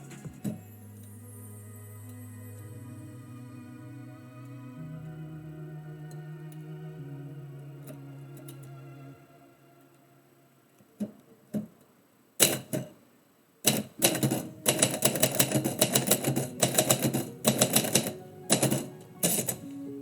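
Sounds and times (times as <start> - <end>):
typewriter typing: 12.4 - 12.9, 13.7 - 19.7.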